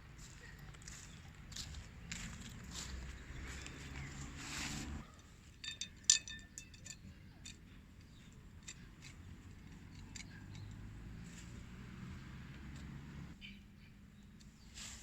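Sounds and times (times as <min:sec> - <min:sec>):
metal camp gear clinking: 0:05.0 - 0:11.5
rustling: 0:14.4 - 0:15.0.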